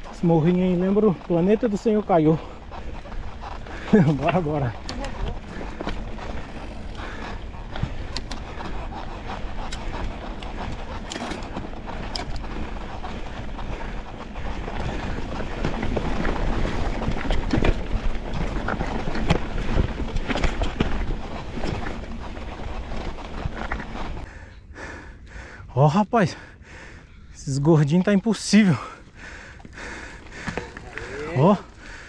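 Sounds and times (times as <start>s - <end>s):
bike clicks and knocks: 4.1s - 13.1s.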